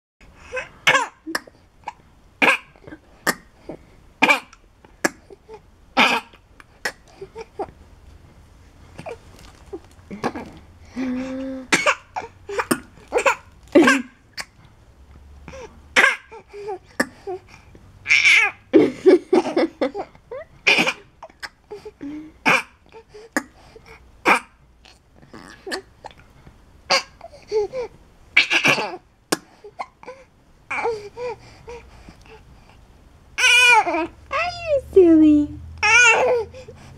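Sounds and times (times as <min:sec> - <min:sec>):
baby coughing: 0:00.6 - 0:03.5, 0:04.2 - 0:05.4, 0:06.0 - 0:07.5, 0:11.7 - 0:14.6, 0:16.0 - 0:16.3, 0:20.6 - 0:21.6, 0:22.4 - 0:22.8, 0:24.2 - 0:24.6, 0:26.9 - 0:27.2, 0:28.4 - 0:30.0
baby laughing: 0:11.7 - 0:14.2, 0:35.8 - 0:36.4
baby babbling coos: 0:35.8 - 0:36.6.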